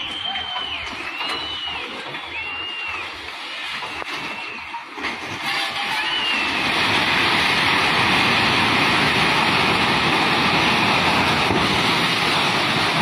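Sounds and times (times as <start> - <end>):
floodwater rushing: 1.0 - 13.0.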